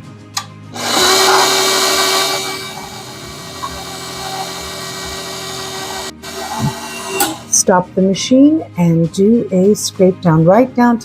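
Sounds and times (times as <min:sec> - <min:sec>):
electric mixer running: 0:00.8 - 0:07.5.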